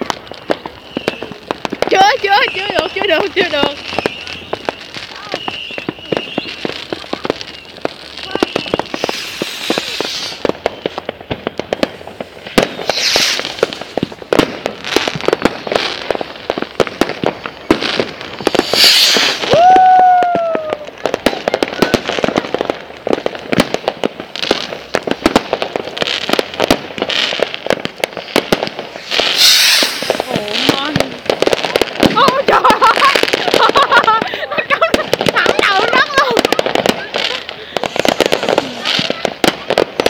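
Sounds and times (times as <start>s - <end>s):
firework whistle: 0.0s - 14.0s, 17.6s - 22.4s, 28.2s - 31.2s
fireworks crackling: 0.0s - 40.0s
fireworks hissing bursts: 0.0s - 40.0s.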